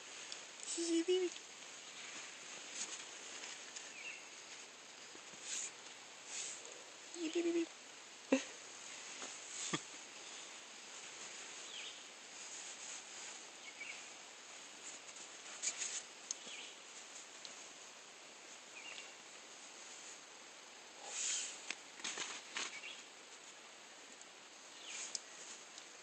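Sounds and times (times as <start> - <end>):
steady hiss: 0.0 - 26.0
scratchy rustles: 1.8 - 6.7, 10.9 - 16.2.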